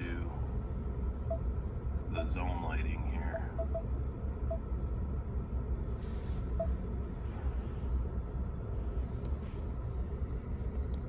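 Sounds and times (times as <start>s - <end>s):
low rumble inside truck cab: 0.0s - 11.0s
short faint beeps: 3.5s - 3.9s.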